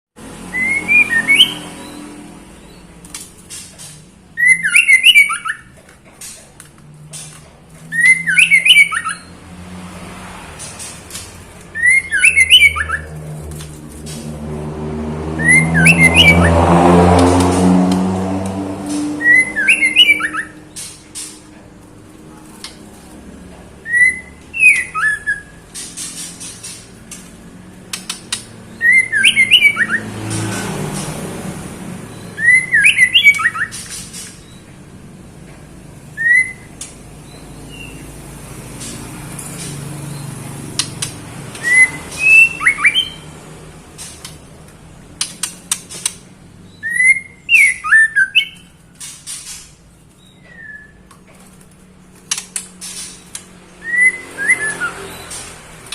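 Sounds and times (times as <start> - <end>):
bird call notes: 18.8 - 21.3.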